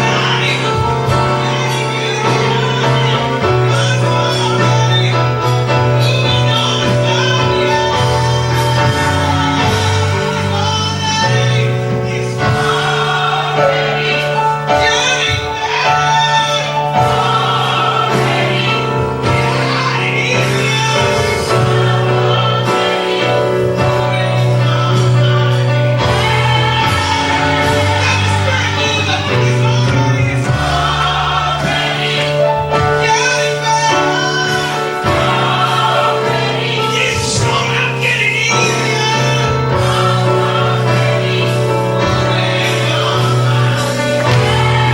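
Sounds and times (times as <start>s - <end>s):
gospel choir singing: 0.0s - 44.9s
sustained bass notes: 16.3s - 44.9s.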